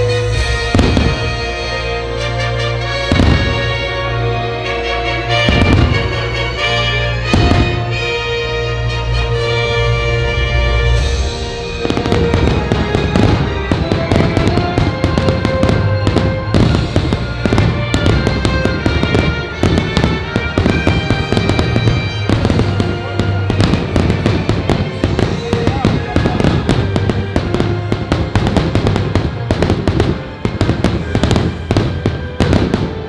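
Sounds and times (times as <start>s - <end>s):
fireworks bursting: 0.0s - 8.4s, 10.8s - 33.0s
loud music: 0.0s - 33.0s.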